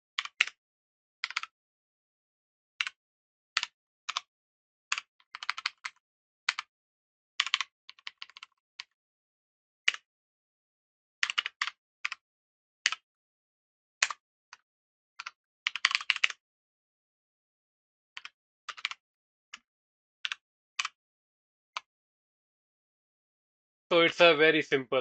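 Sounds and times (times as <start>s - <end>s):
typing on computer keyboard: 0.2s - 0.6s, 1.2s - 1.5s, 4.9s - 6.7s, 7.4s - 9.0s, 11.2s - 12.2s, 15.2s - 16.4s, 18.2s - 19.0s.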